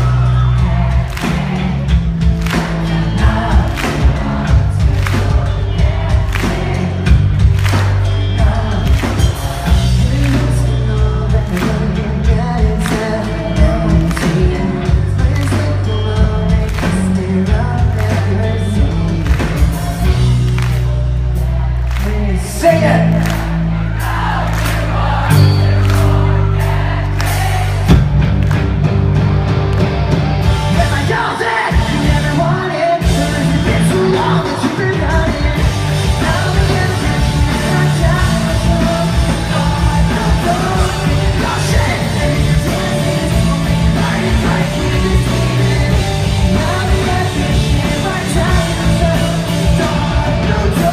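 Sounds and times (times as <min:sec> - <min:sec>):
crowd yelling: 0:00.0 - 0:11.2, 0:19.6 - 0:50.9
live pop-punk band: 0:00.0 - 0:50.9
sustained bass notes: 0:00.0 - 0:50.9
person singing: 0:30.7 - 0:50.9.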